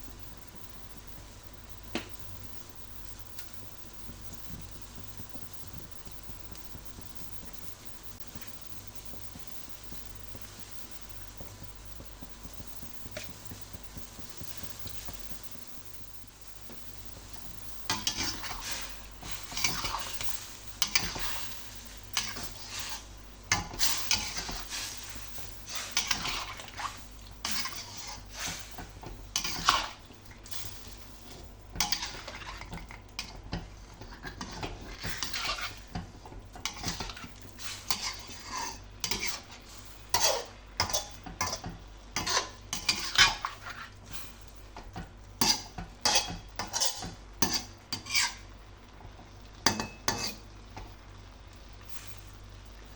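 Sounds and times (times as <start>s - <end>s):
food sizzling: 0.0s - 52.9s
spatula scraping a pan: 17.4s - 44.4s, 45.4s - 48.5s, 49.7s - 50.5s.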